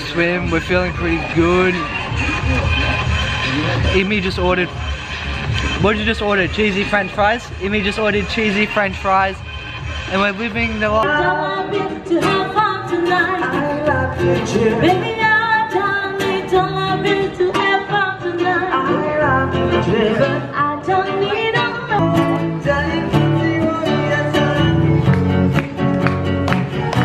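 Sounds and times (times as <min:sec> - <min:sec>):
guitar plucked or strummed: 0:11.0 - 0:27.0
person singing: 0:11.0 - 0:27.0.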